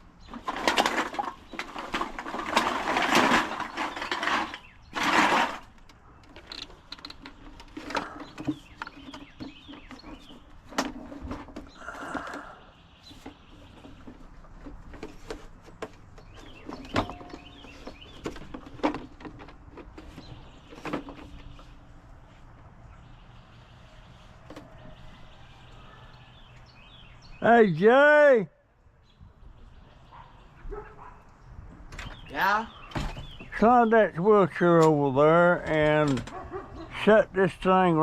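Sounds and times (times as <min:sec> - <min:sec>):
scattered knocks and handling: 0:00.2 - 0:12.3, 0:13.1 - 0:21.8, 0:35.6 - 0:37.1
pots and pans clattering: 0:00.3 - 0:05.7, 0:16.6 - 0:19.2.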